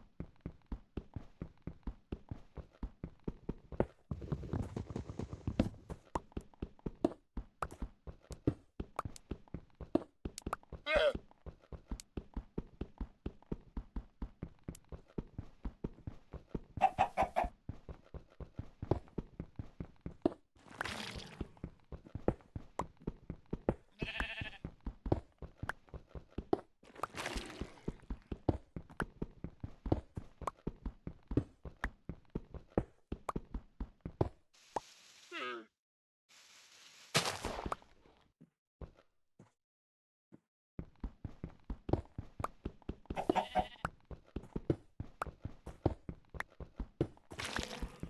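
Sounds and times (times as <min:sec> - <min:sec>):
sheep or goat bleating: 0:23.9 - 0:24.7, 0:43.2 - 0:43.9.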